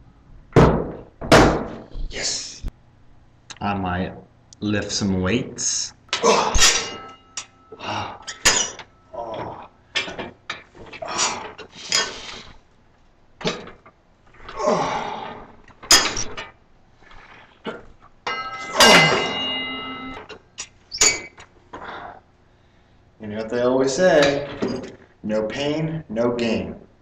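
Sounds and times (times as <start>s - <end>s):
person exhaling and grunting: 6.2s - 6.6s, 7.8s - 8.3s, 9.1s - 9.8s, 11.0s - 12.5s, 14.5s - 15.6s
person groaning: 6.2s - 6.6s, 7.8s - 8.3s, 9.1s - 9.8s, 14.5s - 15.5s.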